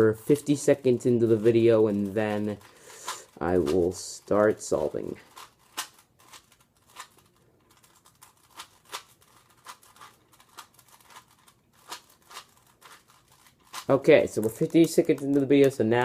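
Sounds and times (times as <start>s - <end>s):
plastic puzzle cube clicking: 5.3s - 15.8s.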